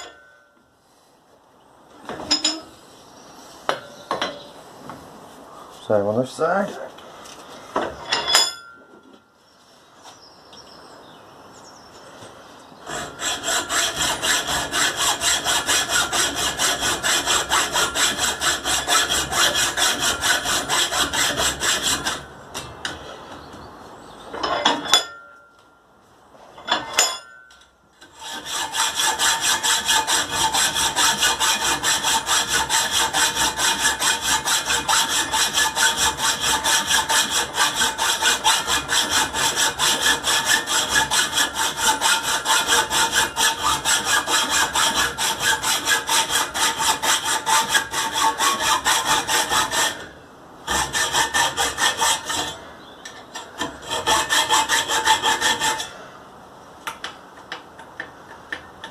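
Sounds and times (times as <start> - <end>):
hacksaw cutting metal pipe: 0.0 - 0.4, 12.8 - 22.3, 26.6 - 56.0.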